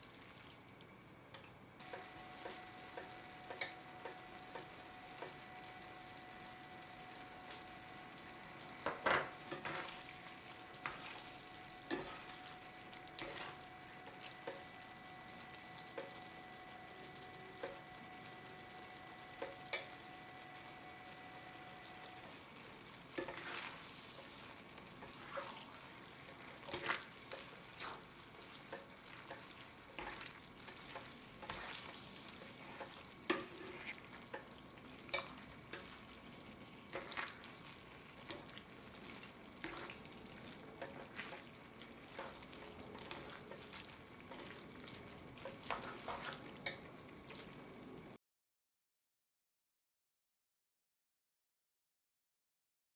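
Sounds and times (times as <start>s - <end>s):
food sizzling: 0.0s - 48.2s
spoon scraping frying pan: 8.8s - 12.6s, 23.1s - 36.2s, 36.8s - 44.7s, 45.4s - 46.9s.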